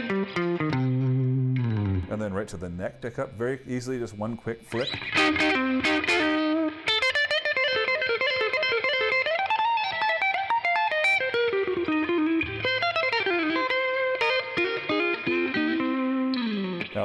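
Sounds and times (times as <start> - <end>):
electric guitar lead line: 0.0 - 2.4, 4.7 - 17.0.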